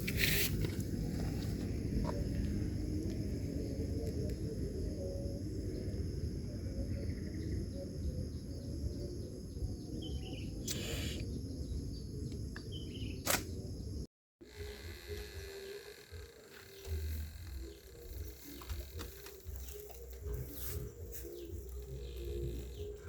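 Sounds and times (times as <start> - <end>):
high insect drone: 1.1 - 23.0
bird chirps: 6.7 - 13.2
sharp click: 12.6 - 13.5.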